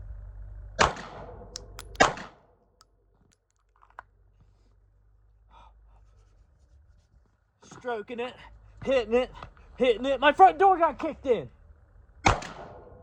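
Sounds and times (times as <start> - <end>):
pistol shots with echo: 12.2 - 12.9.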